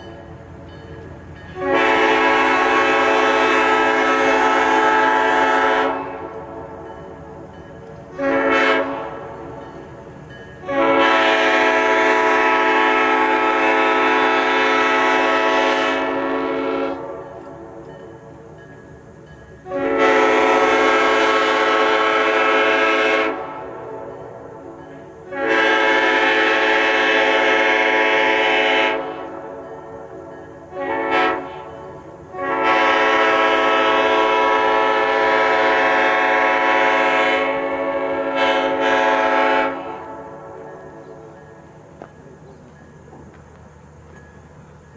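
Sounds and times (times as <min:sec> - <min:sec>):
locomotive air horn blasts: 0:01.5 - 0:06.8, 0:08.1 - 0:09.6, 0:10.6 - 0:17.8, 0:19.6 - 0:41.3.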